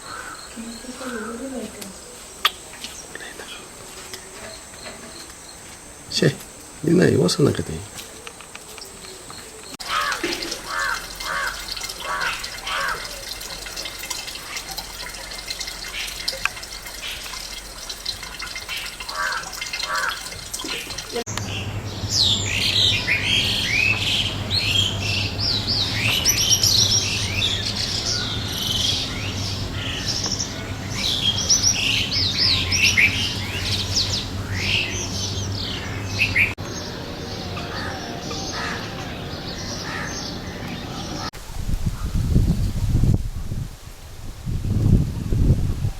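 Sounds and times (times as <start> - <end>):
small birds chirping: 0.0 - 41.3
steady low hum: 11.0 - 38.2.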